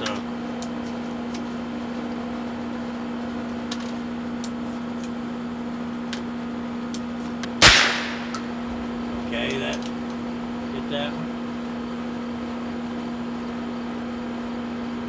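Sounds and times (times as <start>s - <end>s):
steady low hum: 0.0s - 15.0s
revolver gunshot: 7.6s - 8.6s.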